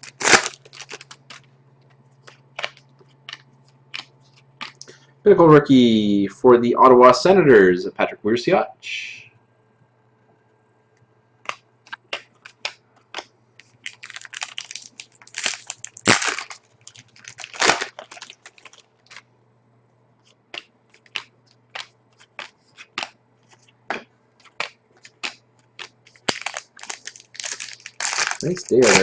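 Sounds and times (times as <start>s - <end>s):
card pack wrappers crinkling: 0.0s - 1.5s, 2.2s - 5.0s, 11.5s - 19.3s, 20.2s - 23.7s, 24.4s - 29.0s.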